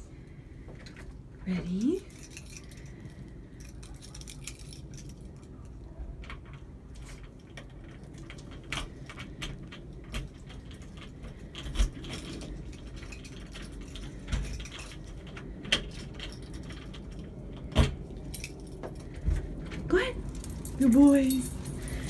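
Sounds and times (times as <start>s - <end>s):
small metal pieces jingling: 2.1s - 5.3s, 20.2s - 22.0s.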